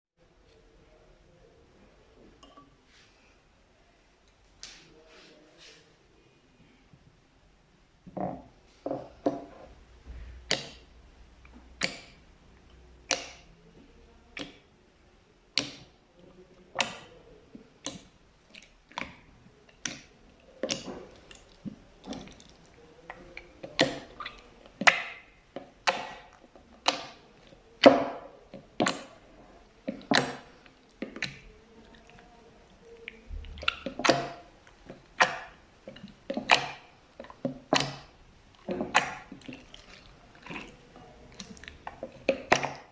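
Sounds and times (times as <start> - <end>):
slime popping and clicking: 13.1 - 13.5.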